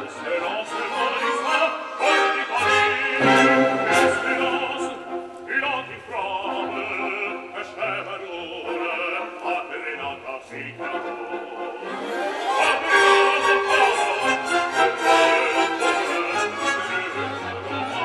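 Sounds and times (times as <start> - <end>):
classical instrumental accompaniment: 0.0 - 18.0
operatic singing with vibrato: 0.0 - 18.0.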